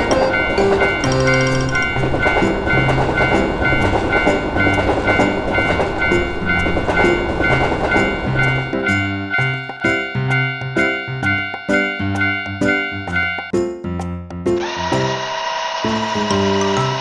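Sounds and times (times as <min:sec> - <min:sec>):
train clattering past: 0:00.0 - 0:11.0
railroad crossing bell dinging: 0:00.0 - 0:13.5, 0:15.9 - 0:17.0
background music with bass: 0:00.0 - 0:15.2.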